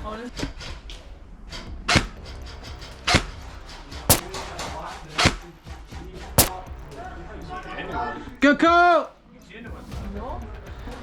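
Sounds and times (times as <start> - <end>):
airsoft rifle shots: 4.1 - 4.4, 6.4 - 6.6.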